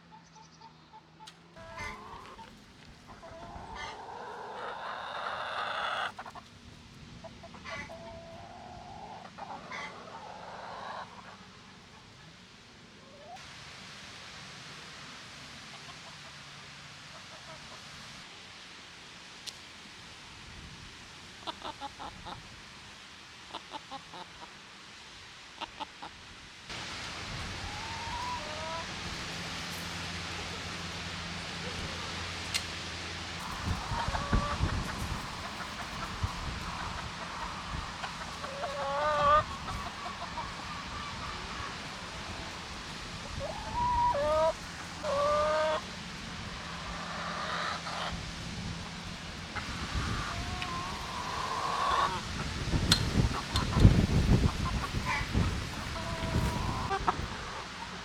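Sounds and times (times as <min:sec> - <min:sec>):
chickens clucking: 0:00.0 - 0:13.4, 0:15.6 - 0:18.2, 0:21.4 - 0:22.6, 0:23.4 - 0:24.7, 0:25.5 - 0:58.0
faint steady hiss: 0:00.0 - 0:58.0.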